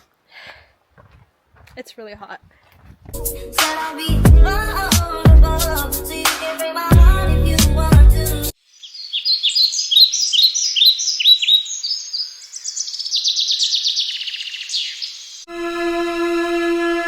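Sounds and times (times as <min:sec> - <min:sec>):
music playing: 0:03.2 - 0:08.5
songbird chirping and trilling: 0:08.5 - 0:15.5.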